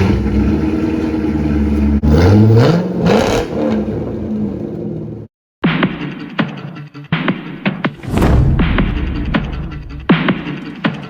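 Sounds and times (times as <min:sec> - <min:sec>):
car engine revving and idling: 0:00.0 - 0:05.3
music: 0:05.6 - 0:11.0.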